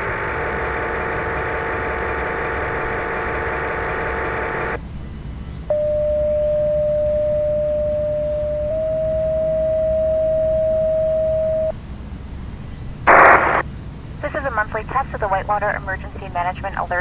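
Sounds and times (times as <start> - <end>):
radio static hiss: 0.0 - 4.8, 13.1 - 13.6, 14.2 - 17.0.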